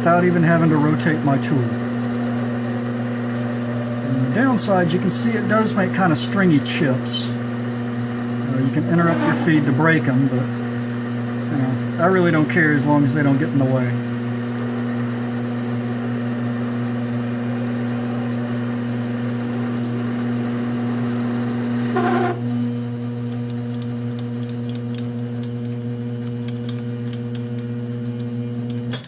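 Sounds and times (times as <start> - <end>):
lathe motor hum: 0.0 - 28.9
short squeal: 21.9 - 22.4.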